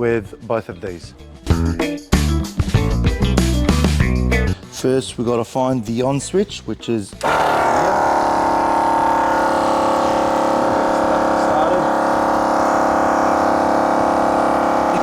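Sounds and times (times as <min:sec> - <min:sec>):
air compressor running: 0:07.2 - 0:15.0.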